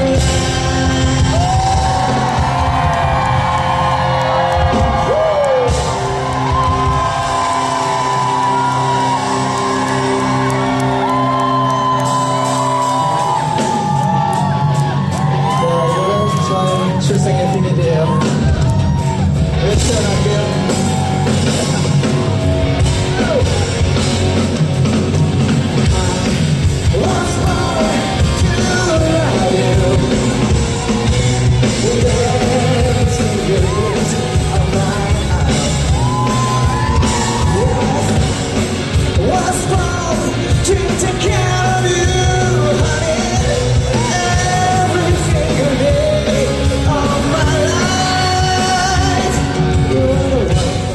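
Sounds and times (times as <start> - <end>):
man singing: 0.0 - 2.6, 19.5 - 21.8, 25.7 - 38.4, 39.1 - 50.9
live rock band playing: 0.0 - 50.9.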